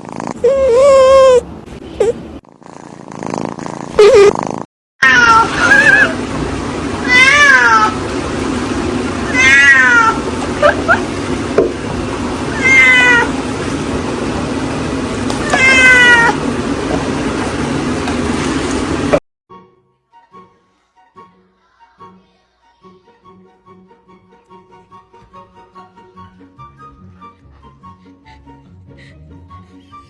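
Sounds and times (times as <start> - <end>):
cat meowing: 0.4 - 2.2, 5.0 - 6.2, 7.0 - 8.0, 9.2 - 11.0, 12.5 - 13.3, 15.4 - 16.4
low background hum: 5.1 - 19.2.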